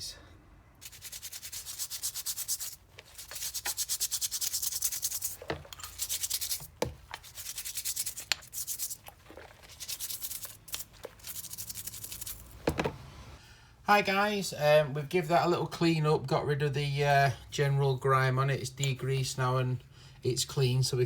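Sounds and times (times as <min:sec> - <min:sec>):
scrubbing metal wrench: 0:00.8 - 0:12.8.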